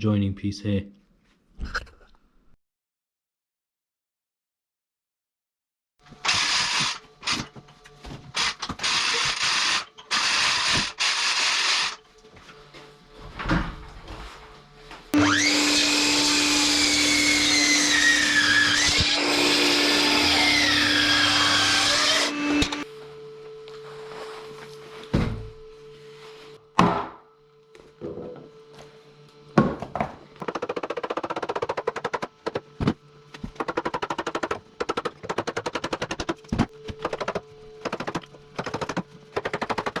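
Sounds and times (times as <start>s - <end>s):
power tool cutting wood: 6.2s - 7.5s, 8.3s - 12.0s, 15.2s - 22.9s.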